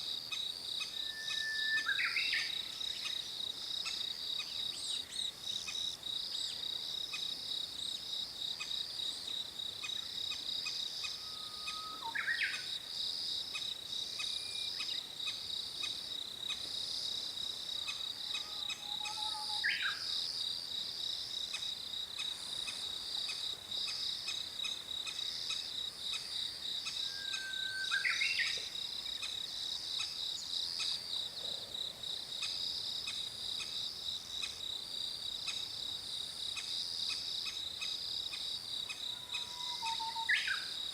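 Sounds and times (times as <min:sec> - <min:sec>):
high insect trill: 0:00.0 - 0:40.9.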